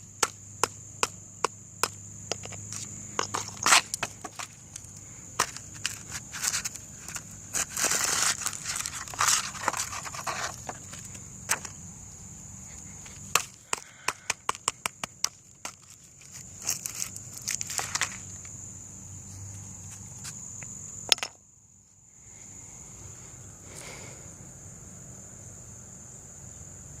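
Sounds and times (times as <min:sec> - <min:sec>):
crickets chirring: 0:00.0 - 0:27.0
crunching handling noises: 0:01.8 - 0:21.3.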